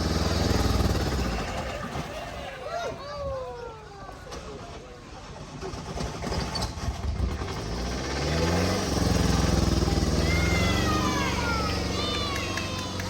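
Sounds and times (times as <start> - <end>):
car engine revving: 7.2 - 13.0.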